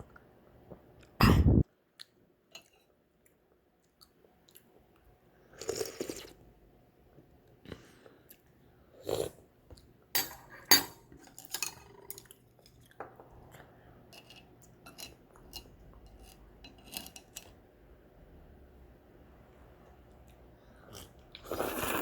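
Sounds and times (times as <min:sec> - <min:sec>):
utensils clinking against bowl: 0:10.2 - 0:12.2, 0:14.1 - 0:17.5.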